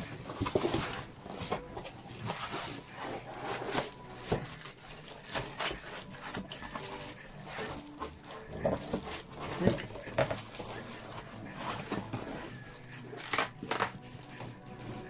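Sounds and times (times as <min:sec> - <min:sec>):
cardboard and paper rustling: 0:00.0 - 0:15.0.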